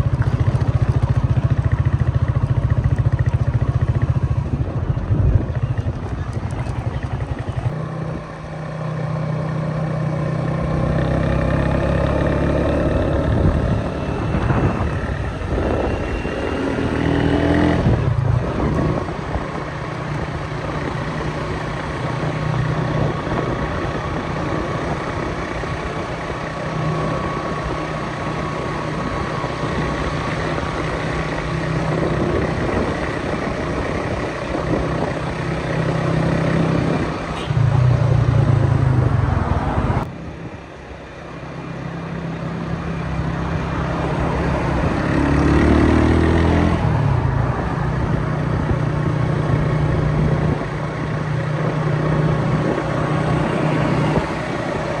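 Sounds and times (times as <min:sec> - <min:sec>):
heavy engine: 0:00.0 - 0:55.0
road traffic: 0:00.0 - 0:55.0
engine revving: 0:09.6 - 0:40.1, 0:43.6 - 0:51.0.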